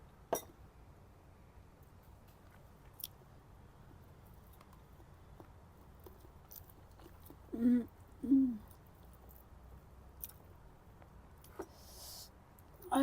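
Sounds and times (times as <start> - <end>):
woman humming mm: 7.5 - 8.7.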